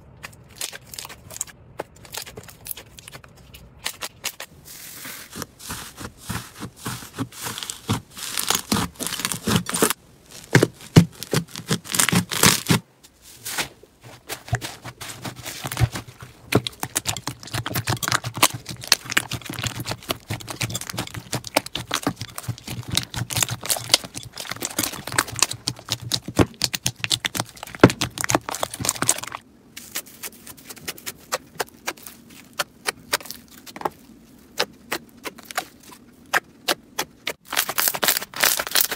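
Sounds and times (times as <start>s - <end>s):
slime crackling and popping: 5.7s - 12.8s, 14.4s - 29.4s, 37.4s - 38.9s.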